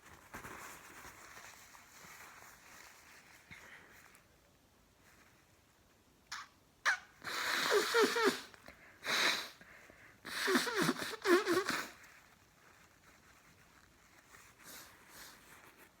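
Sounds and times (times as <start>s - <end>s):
person blowing nose: 6.3s - 12.2s
sharp sniff: 7.2s - 12.1s.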